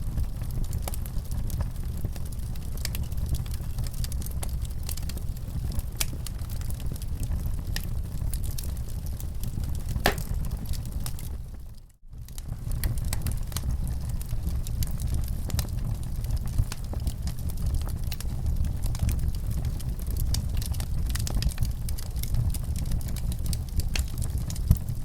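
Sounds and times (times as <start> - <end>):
wood fire crackling: 0.2 - 25.0
fire pops: 10.0 - 10.8.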